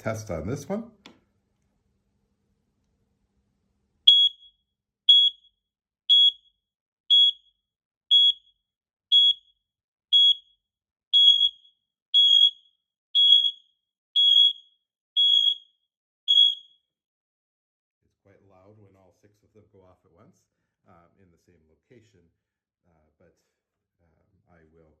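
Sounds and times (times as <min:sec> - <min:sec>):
high-pitched smoke alarm beeps: 0:04.1 - 0:10.6, 0:11.2 - 0:16.8.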